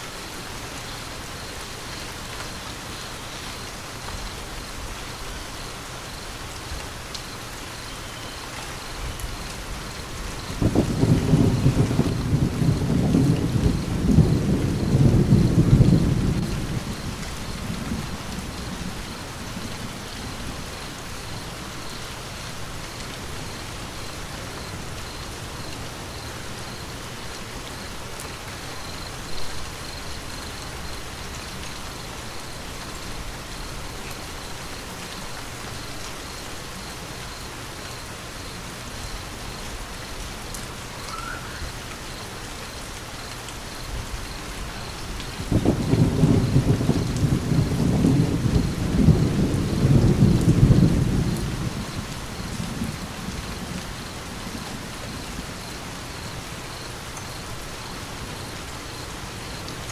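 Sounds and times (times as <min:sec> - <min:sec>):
steady rain: 0:00.0 - 0:59.9
low thunder rumble: 0:09.0 - 0:21.5, 0:43.9 - 0:56.2.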